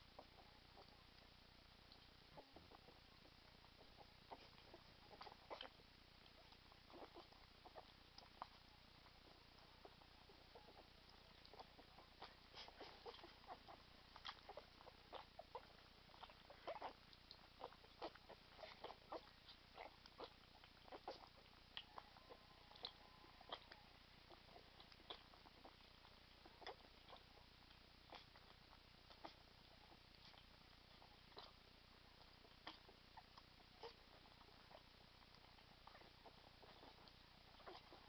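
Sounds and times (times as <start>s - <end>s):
puppies smacking and lapping: 0.0s - 38.0s.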